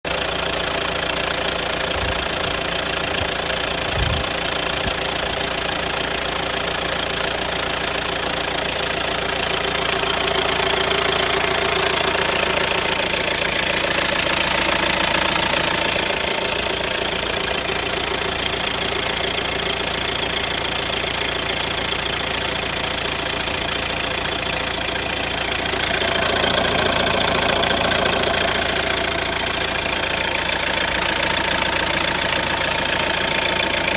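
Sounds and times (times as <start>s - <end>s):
diesel engine knocking and rattling: 0.0s - 33.9s
low thump: 1.9s - 5.0s.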